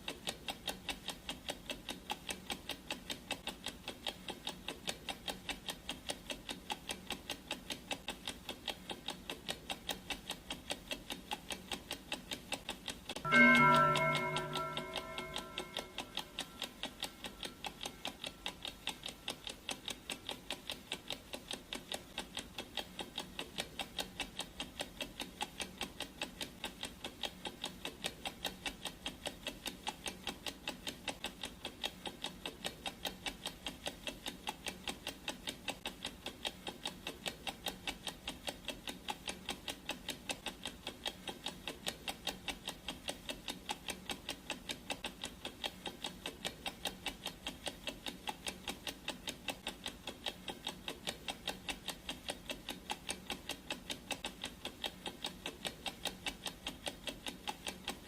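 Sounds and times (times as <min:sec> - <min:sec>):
clock ticking: 0:00.0 - 0:58.0
ringing tone: 0:13.3 - 0:16.7.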